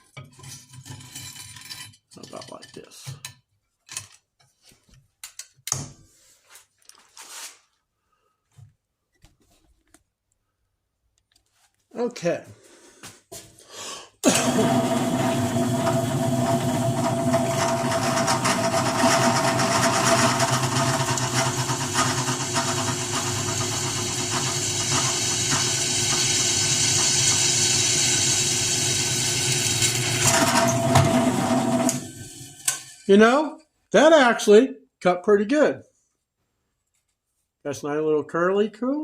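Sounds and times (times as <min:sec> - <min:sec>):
drill bit cutting steel: 0:14.2 - 0:33.1
drill press motor humming: 0:14.2 - 0:33.1.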